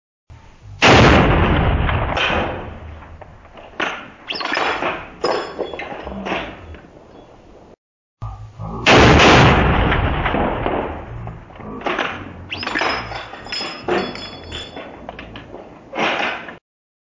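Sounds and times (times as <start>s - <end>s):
rifle shot: 0.8s - 2.9s, 8.9s - 11.1s.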